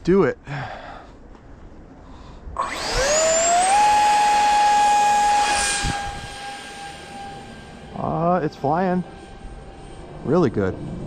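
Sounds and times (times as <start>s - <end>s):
electric ducted fan whine: 0.0s - 11.0s.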